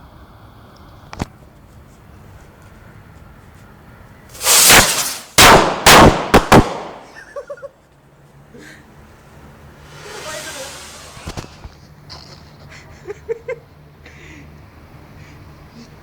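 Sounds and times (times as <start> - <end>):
firecrackers banging: 4.3 - 7.4, 9.8 - 11.8.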